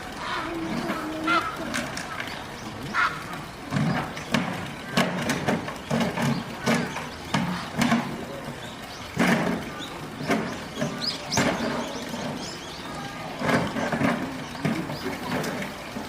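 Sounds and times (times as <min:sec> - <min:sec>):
indistinct voices of onlookers: 0:00.0 - 0:16.0
sharp knocks: 0:03.7 - 0:08.3, 0:09.1 - 0:12.5.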